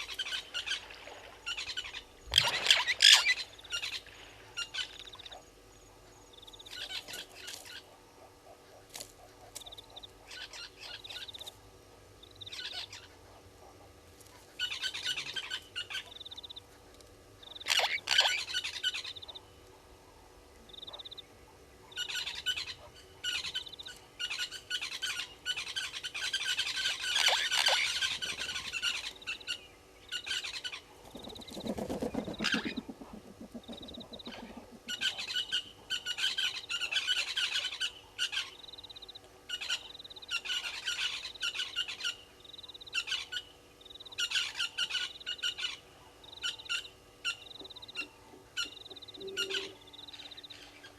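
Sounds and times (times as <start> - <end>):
high bird chirping: 33.5 - 35.7.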